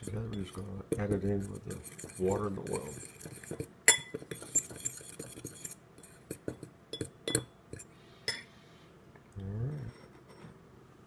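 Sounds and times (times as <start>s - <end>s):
spoon clinking against a bowl: 0.0s - 8.5s.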